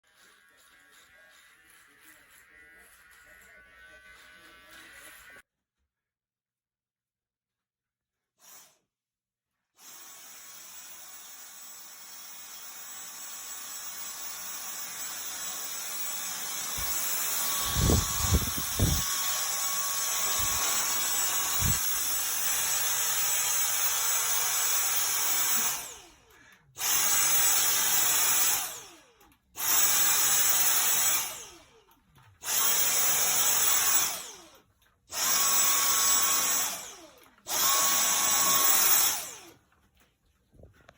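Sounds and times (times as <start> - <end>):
vacuum cleaner motor whine: 16.5 - 22.4.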